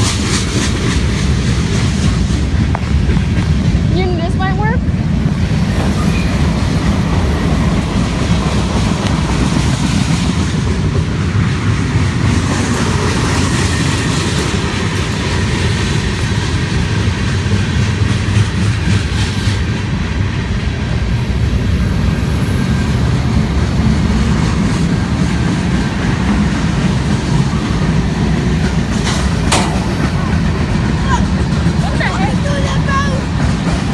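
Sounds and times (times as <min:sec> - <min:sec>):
freight train wheels rumbling: 0:00.0 - 0:33.9
clicking over rail joints: 0:28.6 - 0:31.8.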